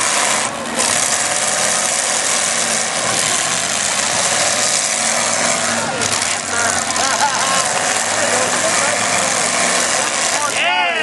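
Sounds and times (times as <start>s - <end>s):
car engines running loud: 0.0s - 11.0s.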